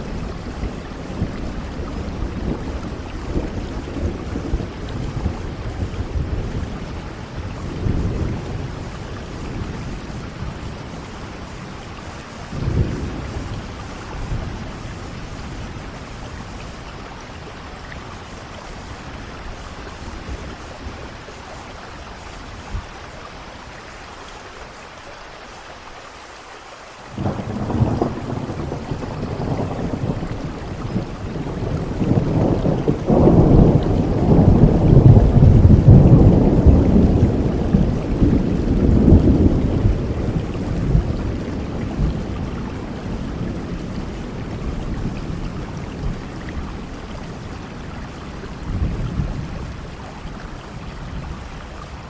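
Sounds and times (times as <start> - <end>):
low rumbles of thunder: 0.0 - 24.0, 27.1 - 52.0
steady rain: 0.0 - 52.0
loud thunderclap: 27.1 - 46.9.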